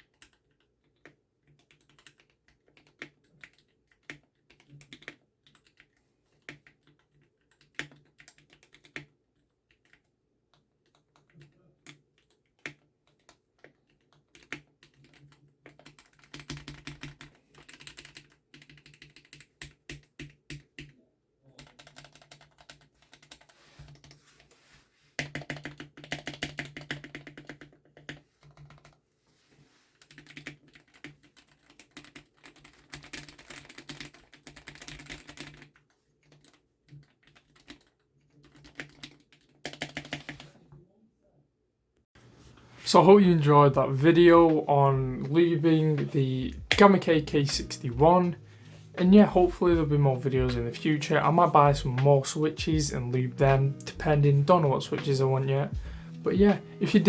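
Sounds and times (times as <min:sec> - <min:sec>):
mechanical keyboard typing: 0:00.0 - 0:10.1, 0:10.8 - 0:20.9, 0:21.6 - 0:24.2, 0:25.2 - 0:29.0, 0:30.0 - 0:40.5.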